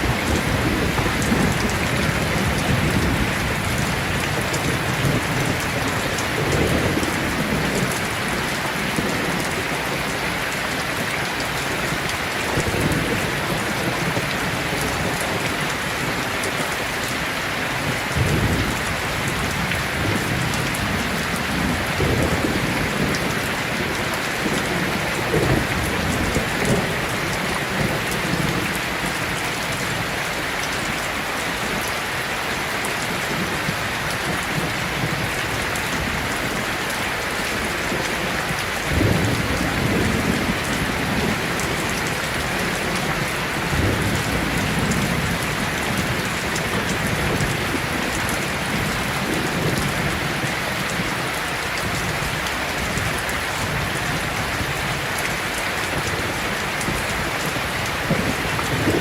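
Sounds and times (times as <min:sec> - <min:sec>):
heavy rain hissing: 0:00.0 - 0:59.0
thunder rolling: 0:56.9 - 0:59.0.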